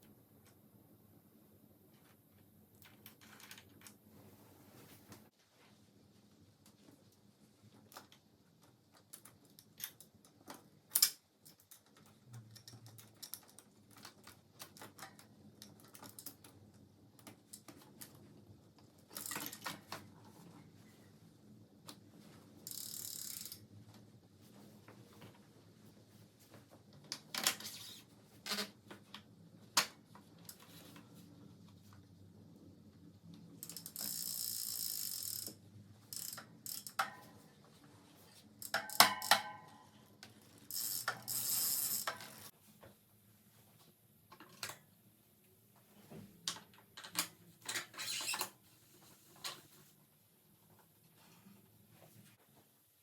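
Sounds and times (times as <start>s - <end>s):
tools clicking and rattling: 33.6s - 37.4s, 38.6s - 39.6s.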